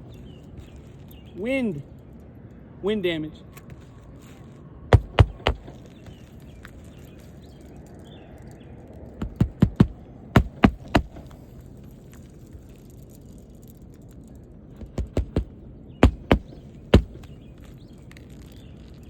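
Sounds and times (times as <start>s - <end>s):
hammer striking nails: 4.9s - 5.9s, 9.2s - 11.4s, 14.8s - 17.3s.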